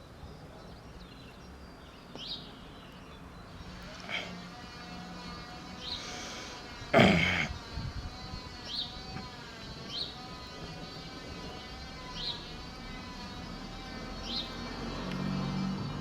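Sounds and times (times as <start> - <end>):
small bird chirping: 0.0 - 16.0
electric siren steady tone: 3.5 - 16.0.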